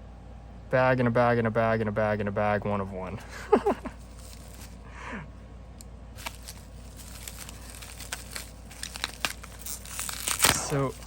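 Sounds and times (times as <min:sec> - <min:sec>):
plastic bags crinkling: 0:03.9 - 0:04.8, 0:06.2 - 0:11.0.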